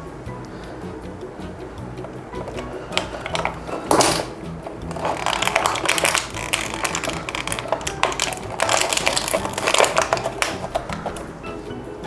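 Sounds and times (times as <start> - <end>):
plastic packaging crinkling: 2.4 - 11.4.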